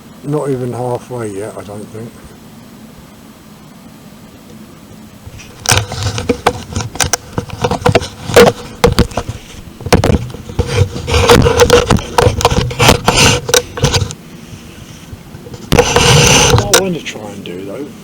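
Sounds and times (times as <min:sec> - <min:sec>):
faint steady hum: 0:00.0 - 0:18.0
equipment being handled: 0:05.3 - 0:16.8.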